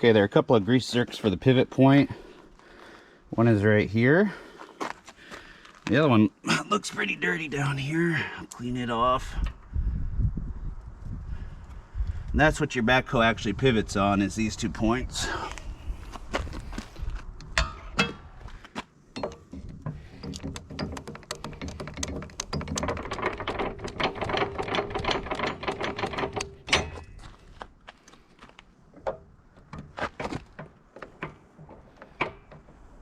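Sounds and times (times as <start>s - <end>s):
metallic rattling: 17.4s - 18.4s, 19.1s - 27.4s.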